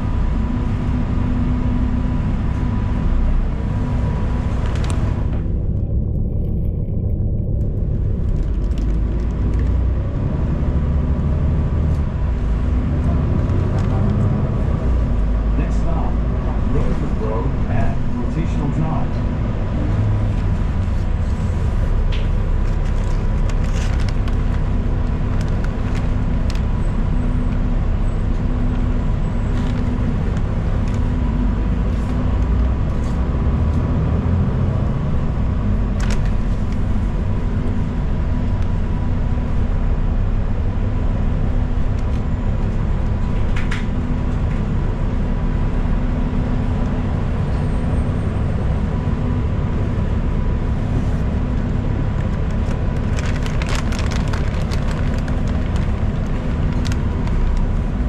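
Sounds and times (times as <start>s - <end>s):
bus engine and road rumble: 0.0s - 58.0s
rattles and clicks in cabin: 1.9s - 10.5s, 11.8s - 33.8s, 34.7s - 47.6s, 48.7s - 58.0s.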